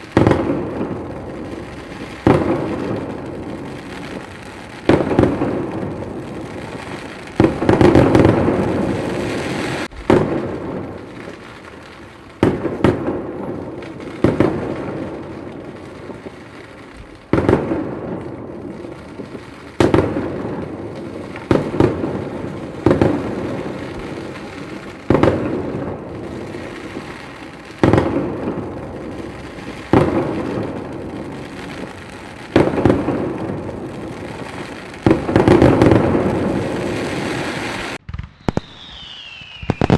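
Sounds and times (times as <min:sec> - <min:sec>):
firework shells bursting: 0:21.2 - 0:39.9.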